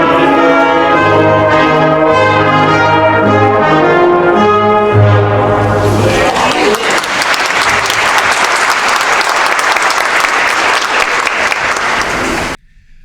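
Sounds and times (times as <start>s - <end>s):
audience applauding: 5.5s - 12.6s.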